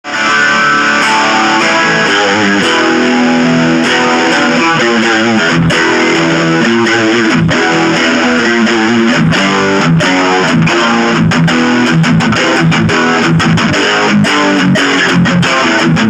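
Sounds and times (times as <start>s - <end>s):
distorted electric guitar: 0.0s - 16.0s.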